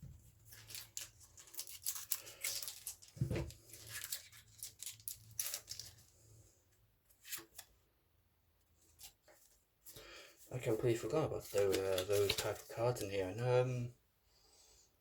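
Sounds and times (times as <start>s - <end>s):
plastic wrapping crinkling: 0.5s - 6.1s, 11.4s - 13.1s.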